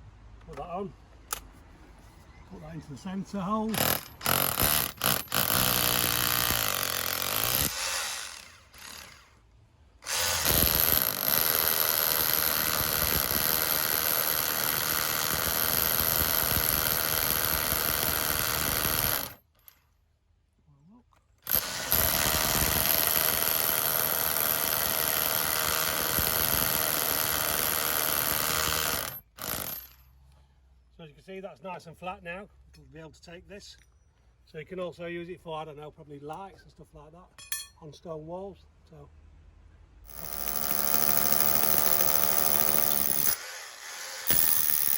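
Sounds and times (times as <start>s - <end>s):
power drill grinding stone: 3.7s - 9.4s, 10.0s - 19.4s, 21.5s - 29.9s, 40.1s - 44.9s.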